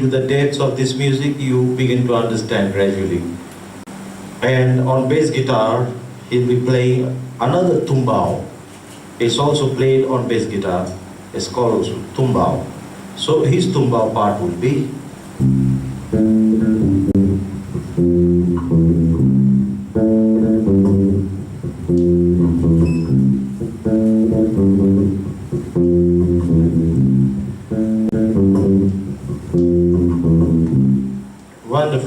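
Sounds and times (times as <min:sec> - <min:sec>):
bass guitar plucked line: 0:15.4 - 0:31.4.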